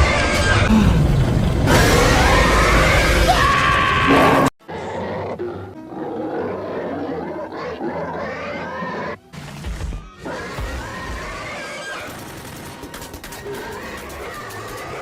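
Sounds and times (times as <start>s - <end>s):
screechy monster roar: 0.0s - 9.2s.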